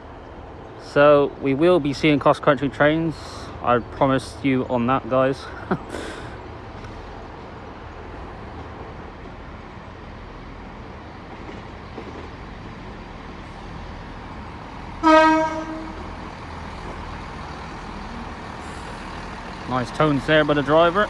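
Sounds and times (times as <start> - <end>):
train running rumble: 0.0 - 21.0
train horn: 15.0 - 16.3.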